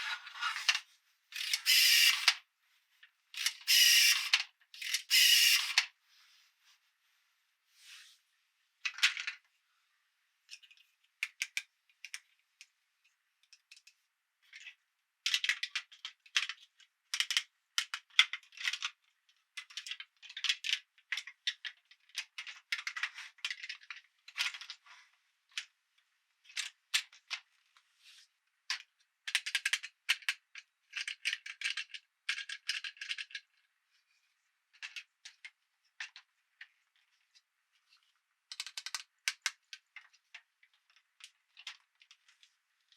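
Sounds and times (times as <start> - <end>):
plastic toy pieces clicking: 1.4 - 2.4, 3.4 - 5.9, 14.5 - 19.0, 19.6 - 24.8, 28.7 - 33.6, 34.7 - 37.4, 38.0 - 42.5.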